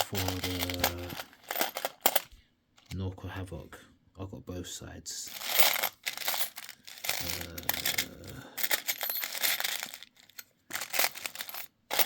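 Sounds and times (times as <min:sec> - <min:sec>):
metal parts rattling in a tin: 0:00.0 - 0:02.3, 0:05.3 - 0:12.0.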